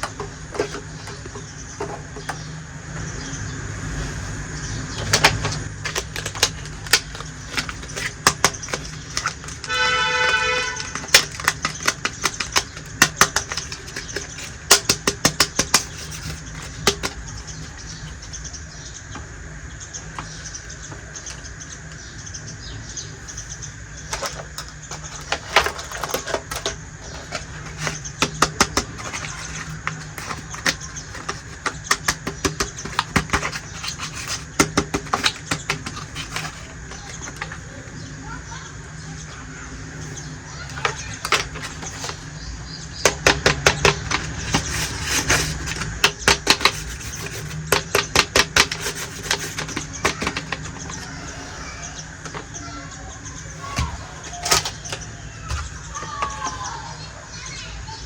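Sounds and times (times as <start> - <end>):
plastic toy pieces clicking: 5.0 - 18.4, 24.1 - 37.7, 40.6 - 42.3, 43.0 - 51.2, 54.2 - 56.6.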